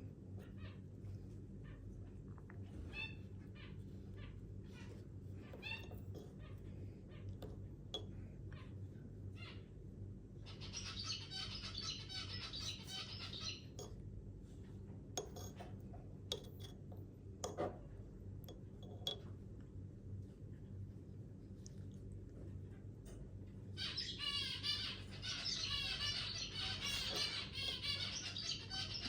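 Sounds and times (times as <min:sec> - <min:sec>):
bird chick begging chirps: 0:10.4 - 0:13.8, 0:23.8 - 0:29.0.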